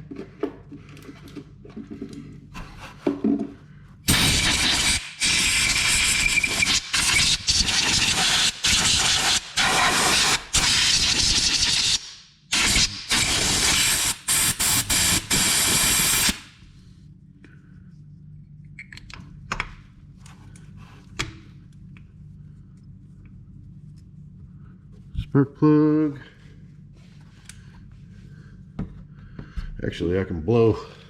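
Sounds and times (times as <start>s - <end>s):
air blow gun hissing: 4.1s - 16.5s
faint low hum: 16.6s - 31.0s.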